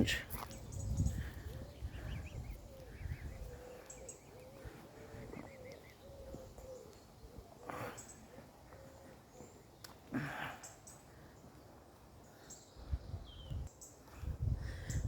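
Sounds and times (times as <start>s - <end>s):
high wavering bird calls: 0.4s - 10.0s
low cooing bird call: 0.5s - 11.0s.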